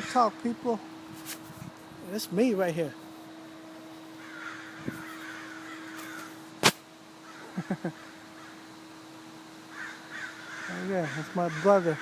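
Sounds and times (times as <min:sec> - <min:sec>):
steady low hum: 0:00.0 - 0:12.0
crows cawing: 0:04.1 - 0:06.5, 0:07.2 - 0:09.0, 0:09.6 - 0:12.0.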